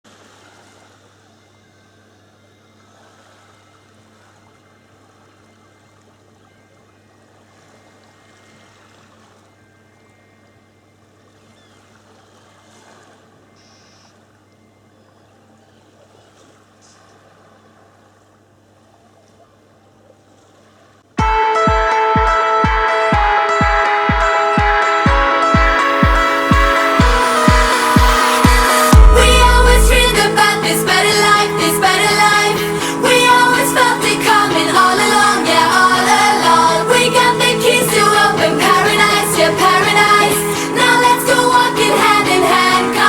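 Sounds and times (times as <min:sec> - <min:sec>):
faint water wash: 0:25.8 - 0:43.0
constant low hum: 0:26.1 - 0:43.0.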